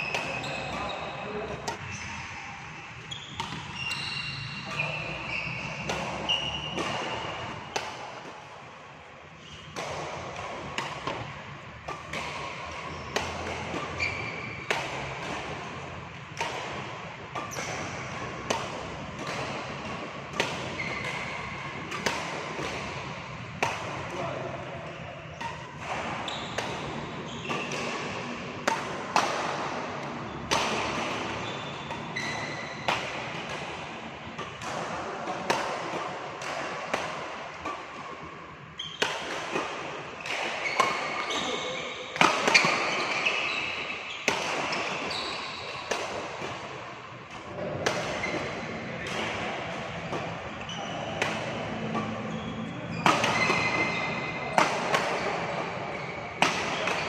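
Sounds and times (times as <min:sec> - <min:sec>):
shoes squeaking on court floor: 0:00.0 - 0:07.5, 0:09.4 - 0:10.1, 0:12.0 - 0:15.7, 0:17.4 - 0:22.0, 0:24.1 - 0:33.7, 0:38.8 - 0:39.4, 0:40.2 - 0:46.6, 0:47.4 - 0:57.0
rackets hitting shuttlecock: 0:00.0 - 0:57.0.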